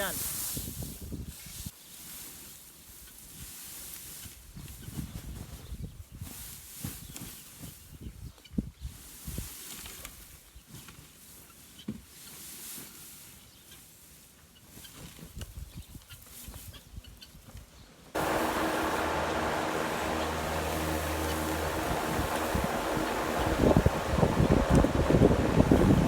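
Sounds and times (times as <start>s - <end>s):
loud steady rushing noise: 18.2s - 26.0s
low mechanical hum: 18.2s - 26.0s
soft low thumps: 18.2s - 26.0s.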